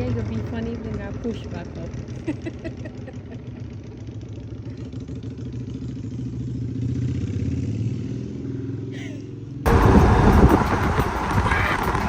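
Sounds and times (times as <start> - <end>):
small engine running: 9.7 - 12.0.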